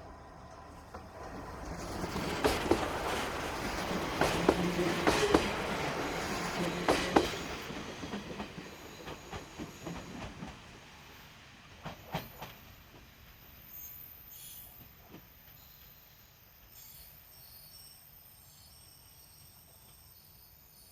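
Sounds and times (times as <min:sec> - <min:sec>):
train wheels clacking over rail joints: 0:00.0 - 0:10.8
low train hum: 0:00.0 - 0:20.9.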